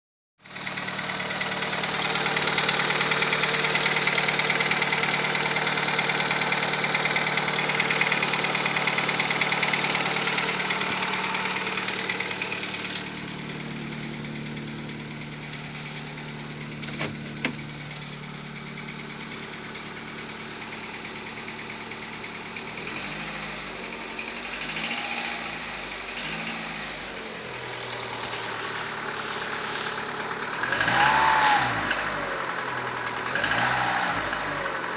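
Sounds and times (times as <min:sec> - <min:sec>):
engine idling with a knock: 0:00.5 - 0:22.6.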